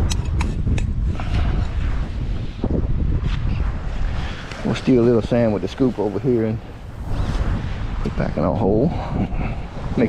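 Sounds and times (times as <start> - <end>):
wind buffeting microphone: 0.0 - 10.0
sand clicks and scrapes: 1.1 - 8.2.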